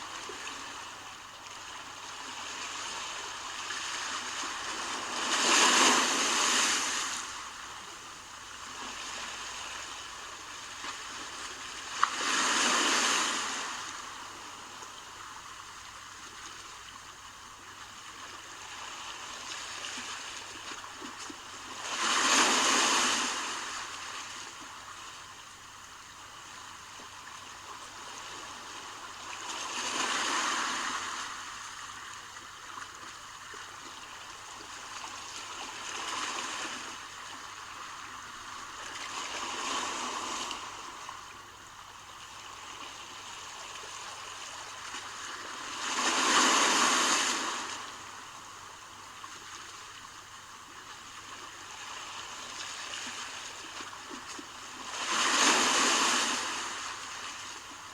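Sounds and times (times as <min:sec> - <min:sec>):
surf washing: 0:02.6 - 0:07.6, 0:21.8 - 0:24.4, 0:43.6 - 0:48.2, 0:54.2 - 0:57.9.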